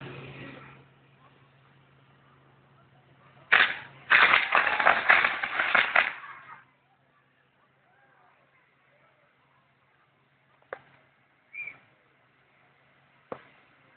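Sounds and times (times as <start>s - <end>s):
fireworks cracking and banging: 3.5s - 6.5s.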